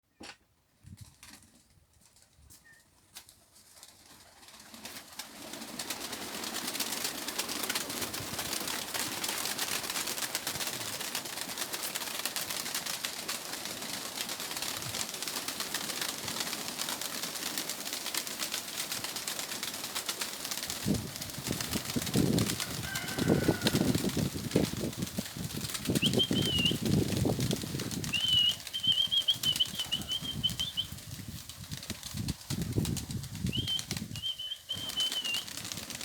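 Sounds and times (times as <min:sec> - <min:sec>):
pigeons cooing: 0:28.0 - 0:31.0.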